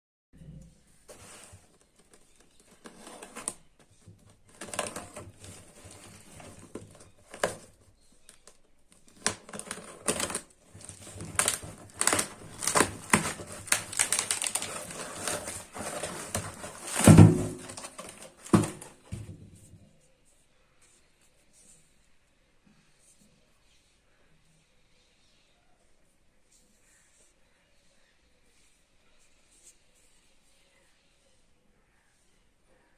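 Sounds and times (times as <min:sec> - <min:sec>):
jar and packaging clicks and crinkles: 0:04.2 - 0:19.0.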